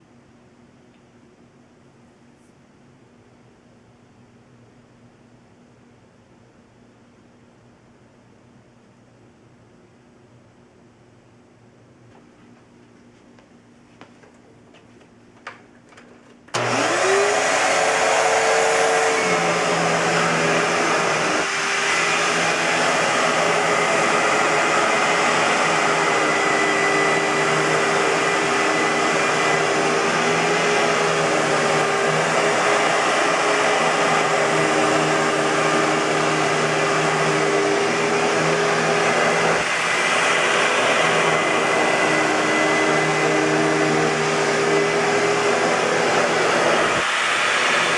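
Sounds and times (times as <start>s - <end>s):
vacuum cleaner motor whining: 16.5s - 47.9s.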